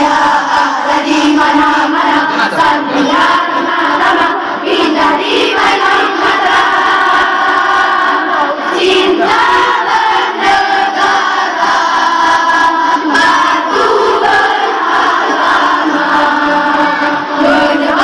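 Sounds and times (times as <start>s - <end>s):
choir singing: 0.0s - 18.0s.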